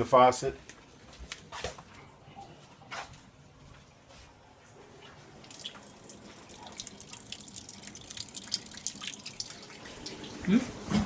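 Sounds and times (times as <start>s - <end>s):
faucet spitting and splashing water: 5.4s - 10.9s.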